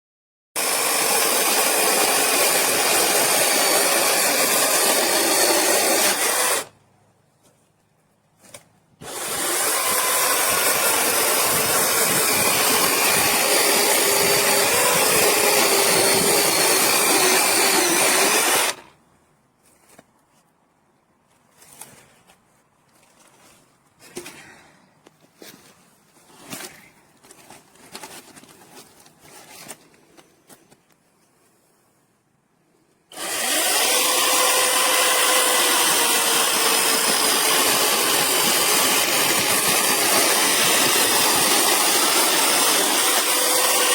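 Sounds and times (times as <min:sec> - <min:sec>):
cordless chainsaw running: 0:00.6 - 0:06.7, 0:09.0 - 0:18.9, 0:33.1 - 0:43.9.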